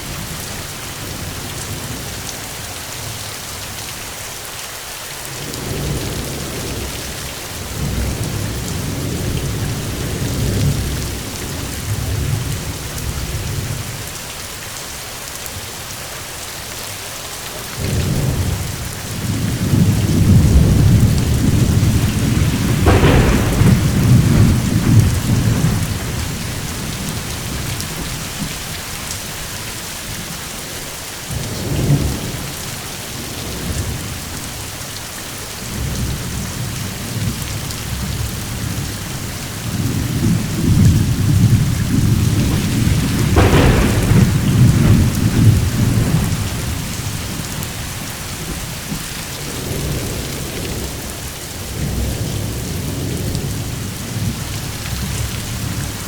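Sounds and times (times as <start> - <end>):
heavy rain: 0.0 - 56.0
thunder rumbling: 5.4 - 14.0, 17.8 - 34.6, 35.6 - 56.0
sharp thunder crack: 17.8 - 30.2, 39.7 - 50.8.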